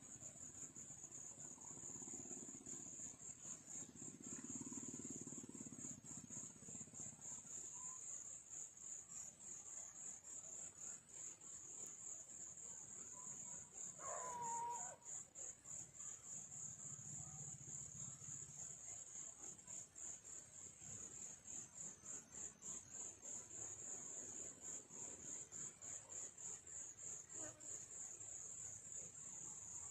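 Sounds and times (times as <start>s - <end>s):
insects trilling: 0.0s - 29.9s
brief insect call: 13.9s - 15.3s.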